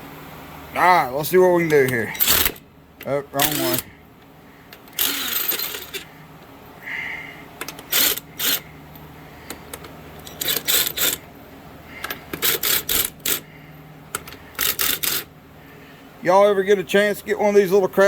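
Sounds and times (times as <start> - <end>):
impact wrench bursts: 1.7 - 2.6, 3.3 - 4.0, 4.7 - 6.1, 7.6 - 8.7, 9.4 - 11.3, 12.0 - 13.5, 14.1 - 15.3.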